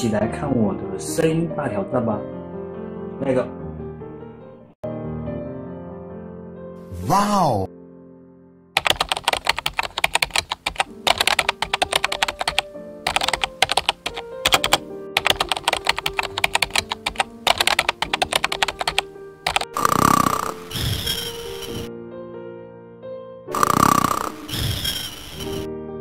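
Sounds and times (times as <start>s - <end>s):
background music: 0.0s - 26.0s
rapid keyboard typing: 8.8s - 21.9s, 23.5s - 25.7s.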